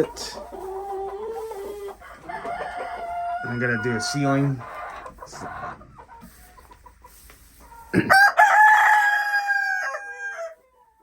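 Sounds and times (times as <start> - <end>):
rooster crowing: 8.1 - 10.6.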